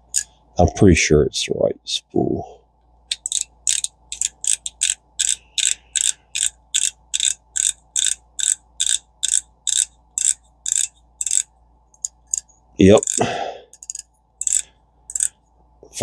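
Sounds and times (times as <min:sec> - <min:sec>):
fishing reel drag clicking: 0:03.1 - 0:11.4, 0:12.3 - 0:15.3.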